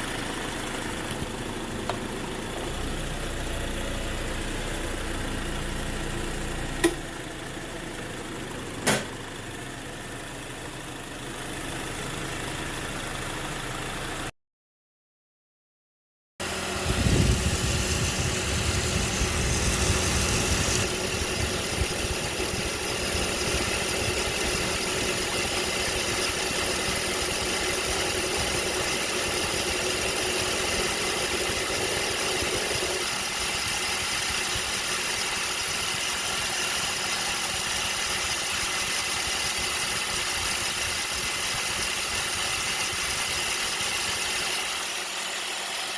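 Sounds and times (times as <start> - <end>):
car engine idling: 0.0 - 14.3, 16.4 - 45.9
hiss: 17.0 - 21.4.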